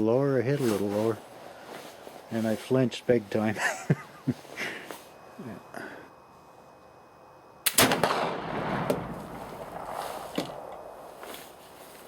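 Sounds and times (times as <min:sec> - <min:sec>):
rifle shot with rumbling echo: 0:07.6 - 0:11.2.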